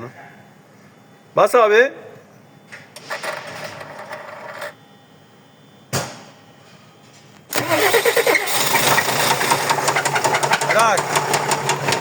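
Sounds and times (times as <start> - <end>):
engine starter cranking: 7.5 - 12.0
engine running with rhythmic knock: 7.6 - 12.0.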